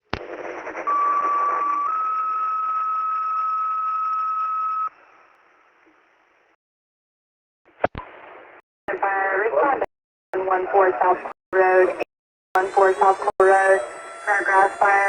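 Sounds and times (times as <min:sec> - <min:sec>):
two-tone radio page: 0:08.9 - 0:15.0.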